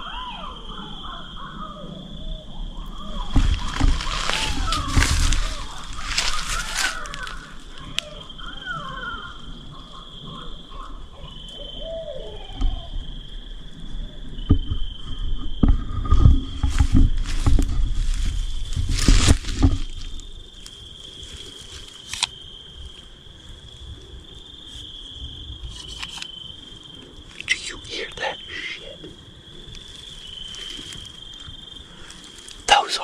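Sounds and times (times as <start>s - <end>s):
coyotes howling and yipping: 0.0s - 15.7s, 16.7s - 33.0s
insects chorus: 0.0s - 33.0s
close rustling and knocks: 3.3s - 7.4s, 14.4s - 22.2s.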